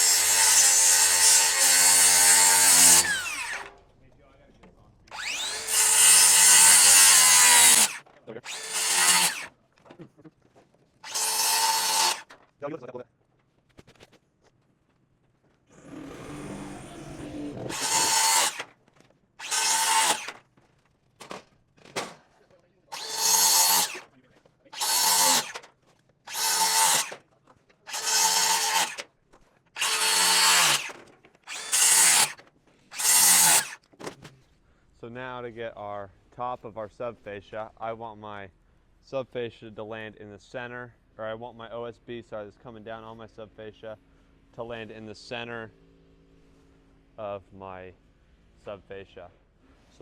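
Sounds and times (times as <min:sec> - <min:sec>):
reciprocating saw cutting wood: 0:00.0 - 0:03.7, 0:05.1 - 0:09.5, 0:11.0 - 0:12.3, 0:15.8 - 0:18.7, 0:19.4 - 0:20.4, 0:22.9 - 0:24.1, 0:24.8 - 0:25.7, 0:26.3 - 0:27.2, 0:27.9 - 0:29.1, 0:29.8 - 0:33.8.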